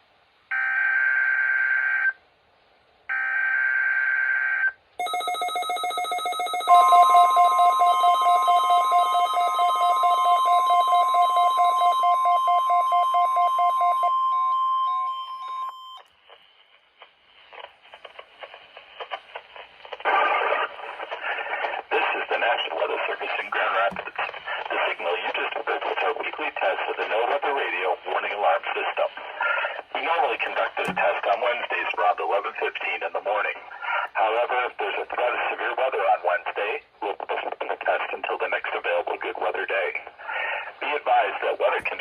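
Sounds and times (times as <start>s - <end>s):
steady warning alarm tone: 5.0s - 16.1s, 30.3s - 31.0s
radio static: 16.2s - 42.0s
broadcast voice: 19.8s - 42.0s.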